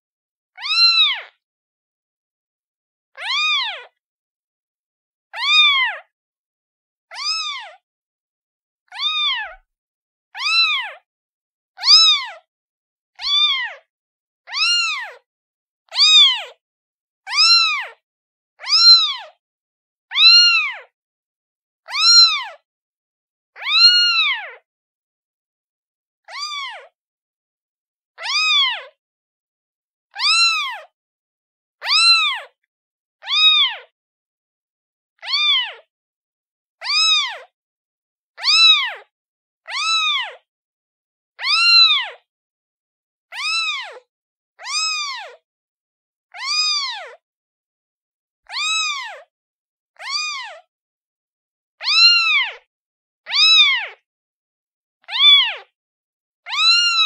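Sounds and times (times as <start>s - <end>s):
kitten meowing: 0.6s - 1.2s, 3.2s - 3.9s, 5.4s - 6.1s, 7.1s - 7.8s, 8.9s - 9.6s, 10.4s - 11.0s, 11.8s - 12.3s, 13.2s - 13.8s, 14.5s - 15.2s, 15.9s - 16.5s, 17.3s - 18.0s, 18.6s - 19.4s, 20.1s - 20.8s, 21.9s - 22.6s, 23.6s - 24.6s, 26.3s - 26.9s, 28.2s - 28.9s, 30.1s - 30.9s, 31.8s - 32.6s, 33.2s - 33.9s, 35.2s - 35.9s, 36.8s - 37.5s, 38.4s - 39.1s, 39.7s - 40.4s, 41.4s - 42.2s, 43.3s - 45.4s, 46.4s - 47.2s, 48.5s - 49.3s, 50.0s - 50.7s, 51.8s - 52.7s, 53.3s - 54.0s, 55.0s - 55.7s, 56.5s - 57.0s.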